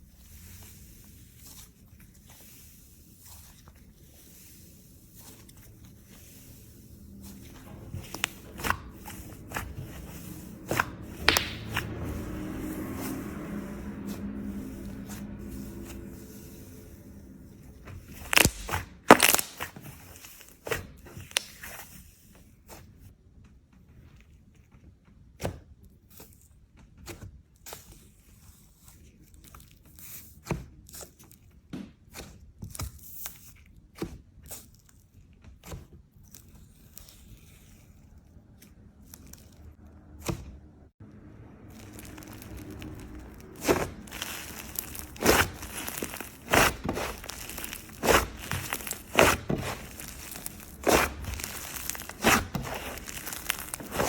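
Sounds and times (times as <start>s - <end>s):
slime clicking and popping: 11.2s - 11.8s, 18.2s - 19.8s, 41.7s - 54.0s.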